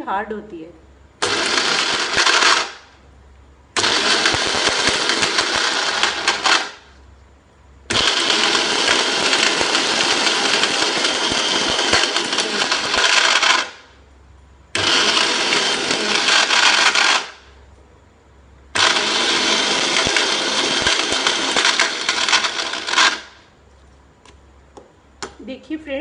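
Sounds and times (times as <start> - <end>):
mixer grinder grinding spices: 1.2 - 2.9, 3.8 - 6.9, 7.9 - 13.9, 14.8 - 17.5, 18.8 - 23.4.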